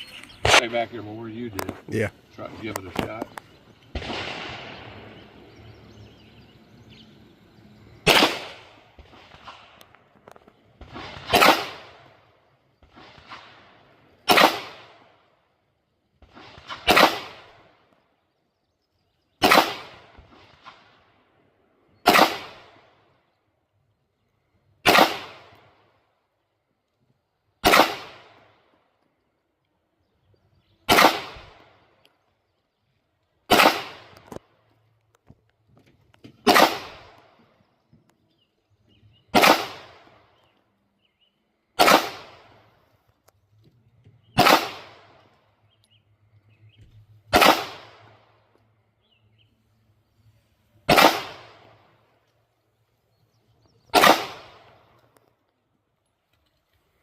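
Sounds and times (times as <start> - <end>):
pistol shots with short echo: 8.0 - 9.8, 10.8 - 12.2, 14.3 - 15.1, 16.2 - 17.6, 19.4 - 20.8, 22.0 - 22.9, 24.8 - 25.8, 27.6 - 28.6, 30.9 - 31.7, 33.5 - 34.4, 36.4 - 37.4, 39.3 - 40.5, 41.8 - 42.6, 44.3 - 45.2, 47.3 - 48.4, 50.9 - 51.9, 53.9 - 54.9.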